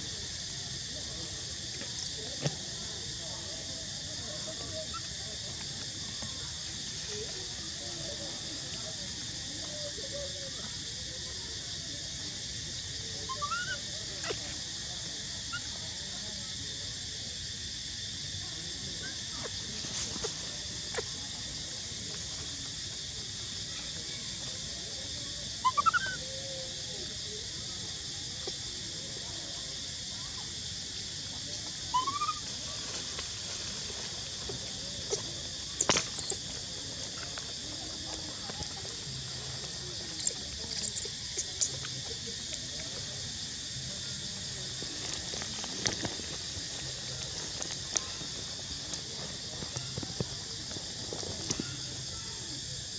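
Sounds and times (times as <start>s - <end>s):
baby monkey squeaking: 13.3s - 14.4s, 25.6s - 26.2s, 32.0s - 32.4s, 35.8s - 36.4s, 40.2s - 41.9s.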